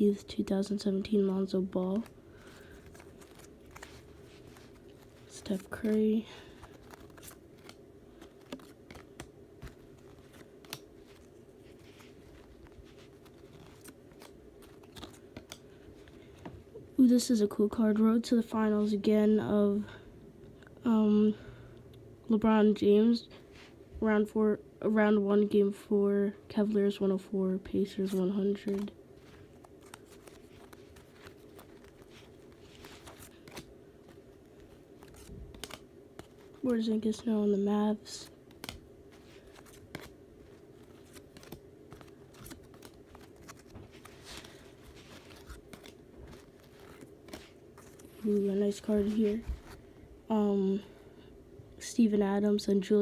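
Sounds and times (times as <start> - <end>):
steady low hum: 0.0 - 53.0
cards flipped through by hand: 1.0 - 16.6, 27.9 - 37.3, 38.2 - 49.8.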